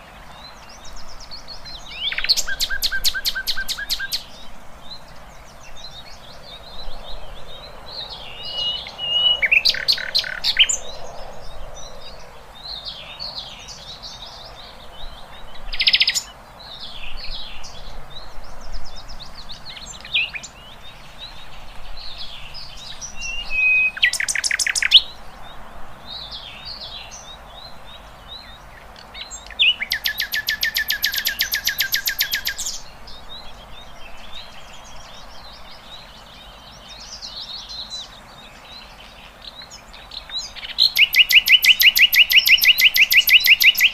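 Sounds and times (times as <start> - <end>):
songbirds chirping and singing: 0.0 - 43.9
bird trill: 1.9 - 4.3, 29.2 - 32.9, 40.2 - 43.9.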